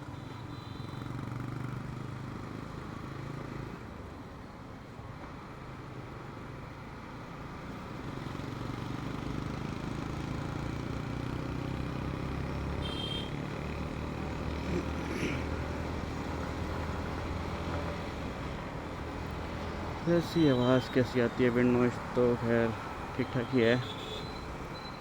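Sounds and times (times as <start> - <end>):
motorcycle engine hum: 8.0 - 24.9.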